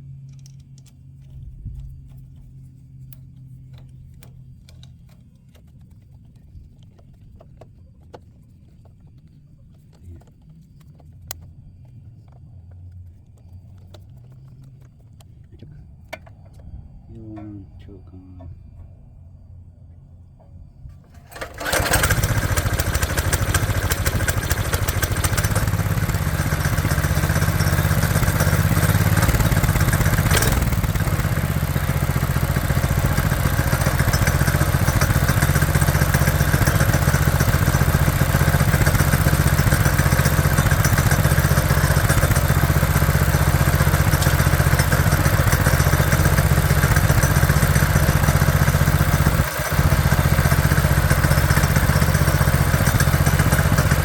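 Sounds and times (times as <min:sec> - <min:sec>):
small gasoline engine running: 0:21.0 - 0:54.0.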